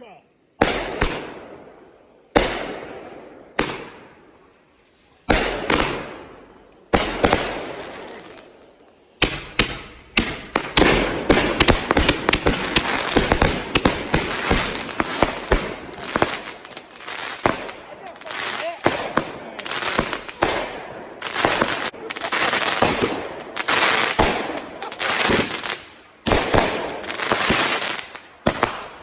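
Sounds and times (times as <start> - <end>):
firework cracks and pops: 0.6 - 29.0
firework bangs with rumble: 3.6 - 4.2, 9.2 - 16.5.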